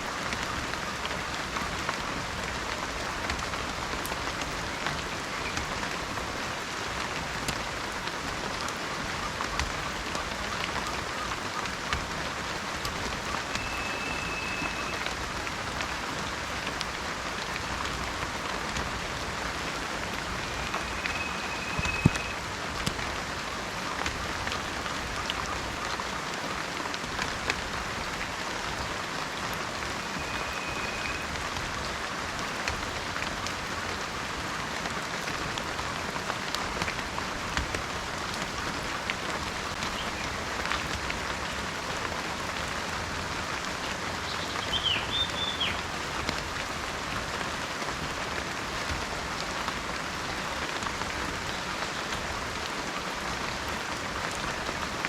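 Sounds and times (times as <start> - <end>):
heavy rain hissing: 0.0 - 55.0
short high whistle: 13.6 - 15.0, 20.7 - 22.4.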